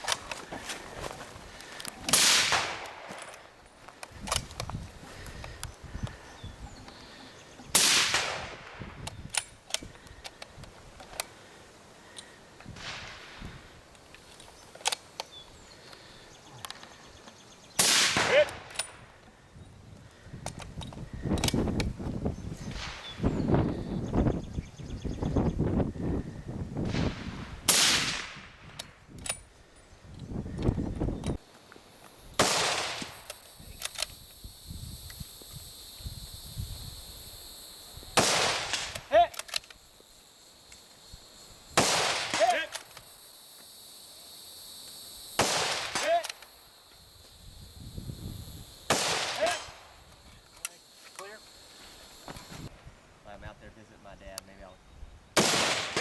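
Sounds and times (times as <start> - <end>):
rifle shots: 2.1 - 3.2, 7.7 - 8.9, 17.8 - 19.0, 26.9 - 28.5, 32.4 - 33.3, 38.2 - 39.1, 41.8 - 42.7, 45.4 - 46.3, 48.9 - 49.9, 55.4 - 56.0.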